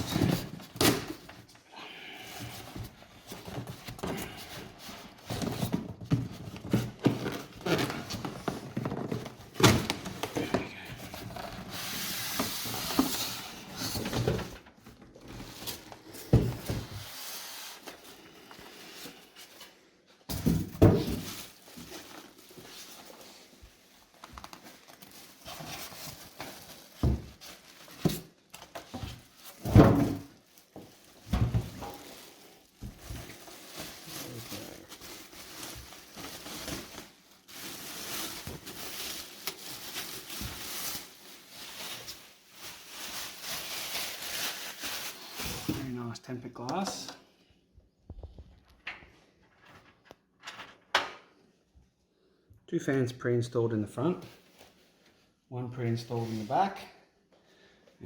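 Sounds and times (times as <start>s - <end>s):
packing rustling: 20.3s - 46.0s.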